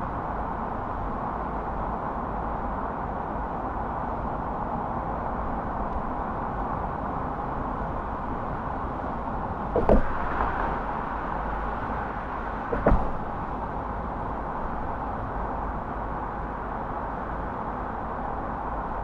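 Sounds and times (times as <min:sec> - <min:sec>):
car driving road noise: 0:00.0 - 0:19.0
short thumps: 0:09.7 - 0:10.4, 0:12.7 - 0:13.4.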